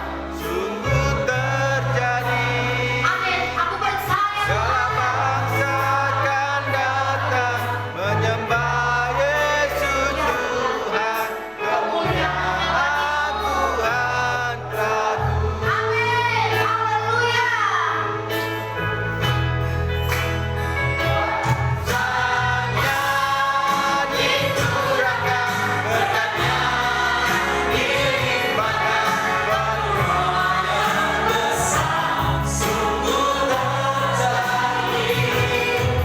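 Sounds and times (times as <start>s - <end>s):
voices singing together: 0.0s - 3.6s, 4.4s - 16.6s, 20.8s - 36.0s
bass line: 12.0s - 36.0s
band playing: 18.0s - 36.0s.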